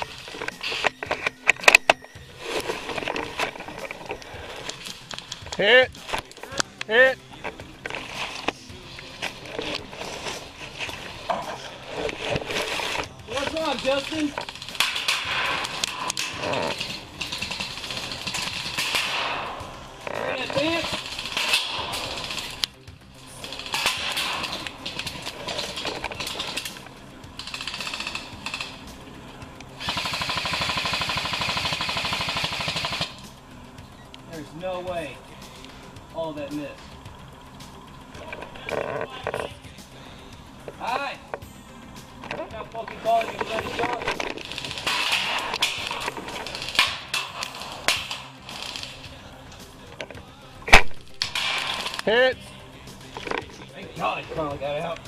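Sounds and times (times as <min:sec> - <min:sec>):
airsoft guns firing bursts: 0:12.8 - 0:22.7, 0:23.4 - 0:26.8, 0:27.4 - 0:29.0, 0:29.8 - 0:33.3, 0:43.4 - 0:49.2.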